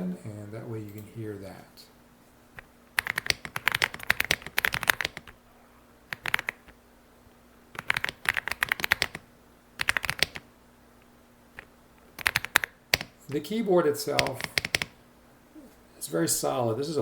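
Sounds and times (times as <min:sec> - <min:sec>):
mechanical keyboard key clacks: 0:12.2 - 0:13.1, 0:14.2 - 0:14.9.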